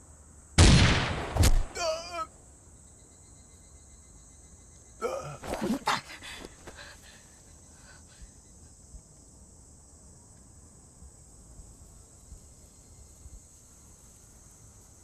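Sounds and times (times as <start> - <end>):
insect chorus chirring: 0.0 - 15.0.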